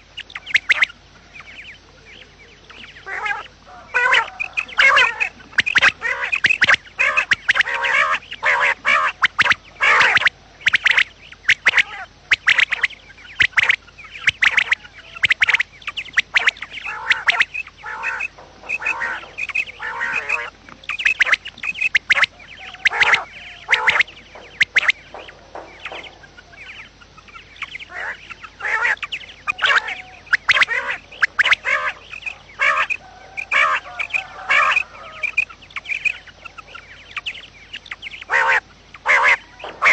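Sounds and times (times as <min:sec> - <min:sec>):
quail calling: 0:00.0 - 0:39.9.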